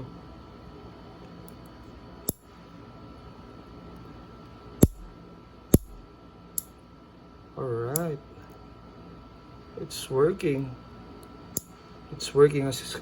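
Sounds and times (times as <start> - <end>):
nail clipper clicks: 4.8 - 5.1, 5.8 - 6.0.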